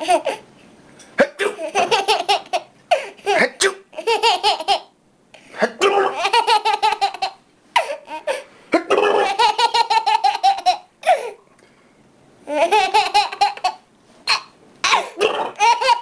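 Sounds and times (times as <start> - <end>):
baby belly laughing: 1.4 - 4.9, 5.8 - 11.4, 12.4 - 16.0.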